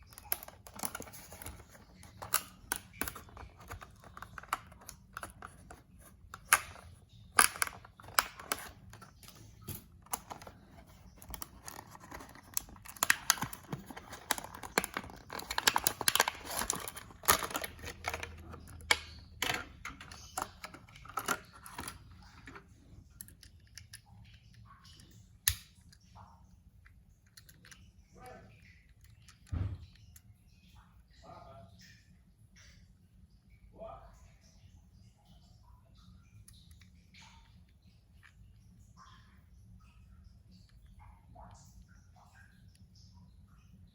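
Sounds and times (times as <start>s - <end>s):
hands handling toy car and packaging: 0.0s - 24.1s.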